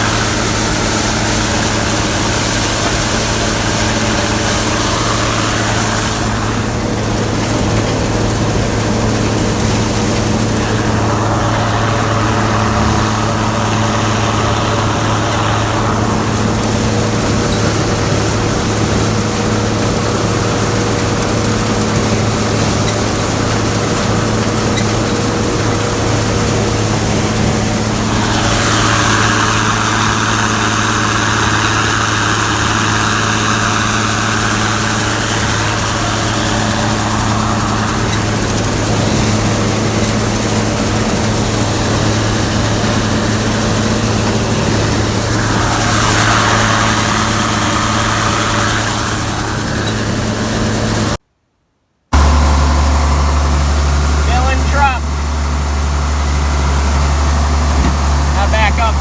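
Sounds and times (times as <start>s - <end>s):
combine engine hum: 0.0s - 51.2s, 52.1s - 59.0s
hissing rush: 0.0s - 51.2s.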